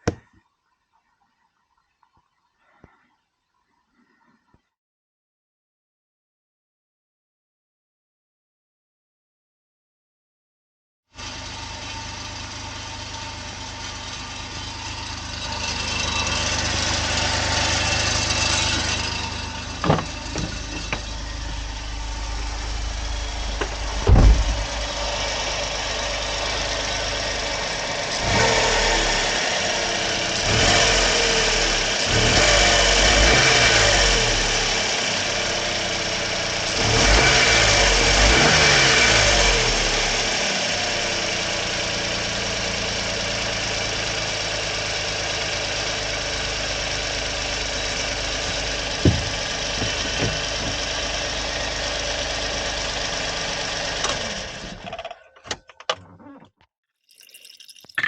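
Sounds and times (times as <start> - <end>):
truck engine running and revving: 11.2 - 54.9
sharp knocks: 24.0 - 24.8, 49.0 - 50.8.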